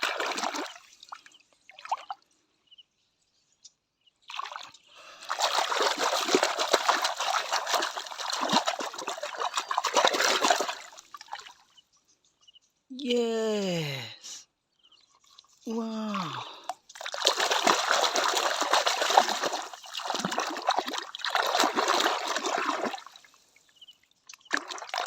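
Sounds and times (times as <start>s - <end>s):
water trickling and splashing: 0.0s - 2.3s, 4.2s - 11.8s, 15.2s - 25.0s.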